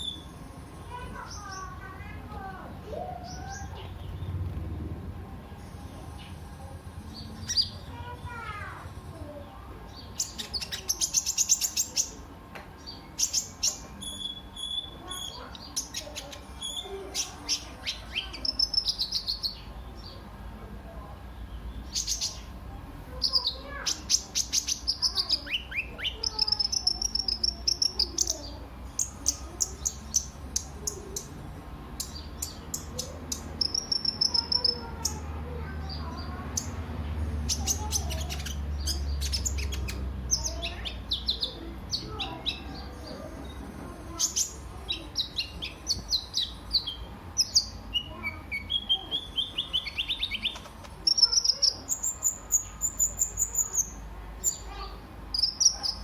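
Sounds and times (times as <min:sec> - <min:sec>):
sunbird singing chips and trills: 0:09.1 - 0:12.2, 0:12.8 - 0:20.3, 0:21.3 - 0:22.6, 0:23.2 - 0:56.0.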